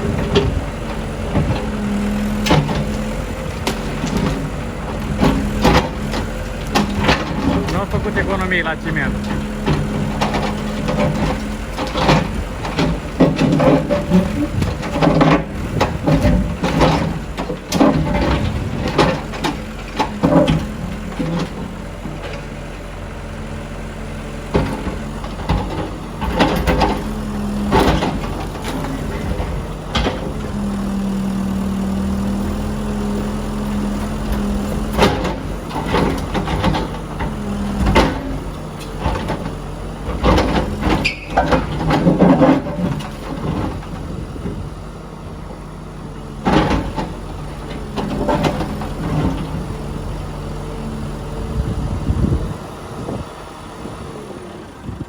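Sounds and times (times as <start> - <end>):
diesel engine running: 0.0 - 55.0
demolition debris crashing: 2.5 - 20.6.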